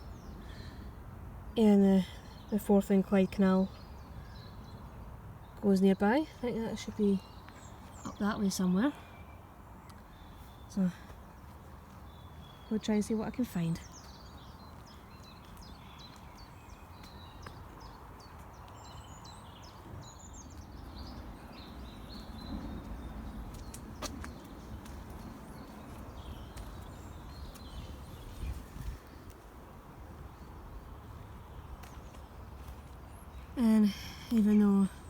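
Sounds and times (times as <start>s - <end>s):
small birds chirping: 1.6s - 35.0s
steady low rumble: 20.4s - 29.4s.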